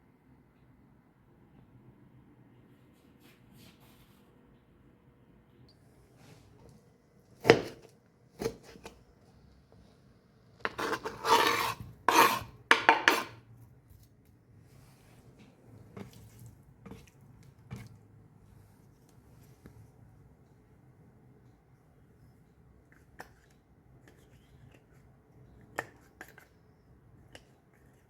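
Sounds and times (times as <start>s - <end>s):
dishes clattering and scraping: 10.7s - 13.4s.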